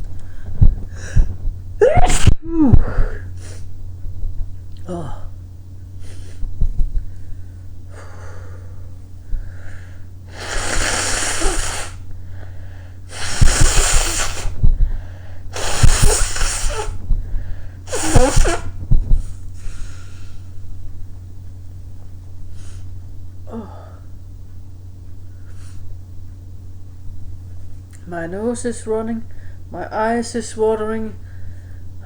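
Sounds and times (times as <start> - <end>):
person breathing: 0.1 - 1.4, 6.0 - 20.6, 31.2 - 31.9
person sneezing loudly: 1.8 - 2.4, 10.3 - 12.0, 13.1 - 14.6, 15.6 - 17.0, 17.9 - 18.7.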